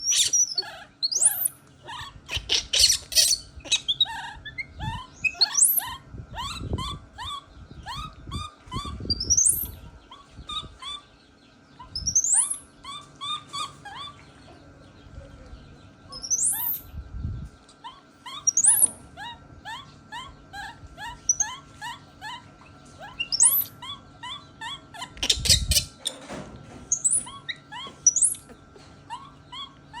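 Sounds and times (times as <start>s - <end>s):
animals chirping and squeaking: 0.0s - 30.0s.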